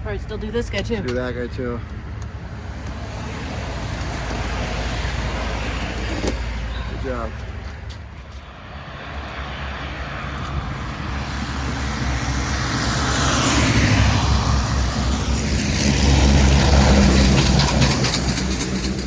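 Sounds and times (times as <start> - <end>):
truck diesel engine: 0.0 - 19.0
tyre noise: 2.8 - 8.5.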